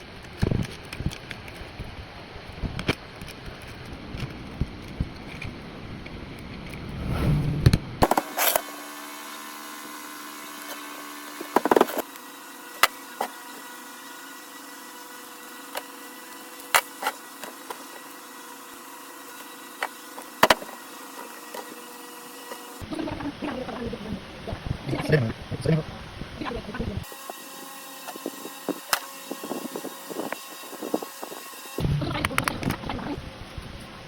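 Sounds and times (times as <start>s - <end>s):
small electric motor humming: 8.0s - 34.0s.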